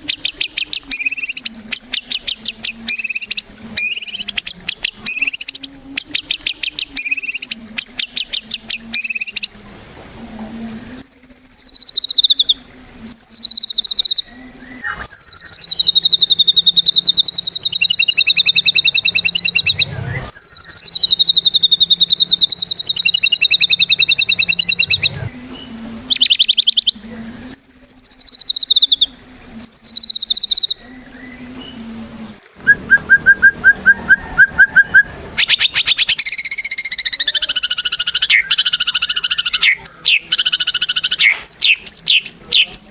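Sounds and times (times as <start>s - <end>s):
bird singing trilled phrases: 0.0s - 9.6s, 10.6s - 42.9s
faint low hum: 0.0s - 42.9s.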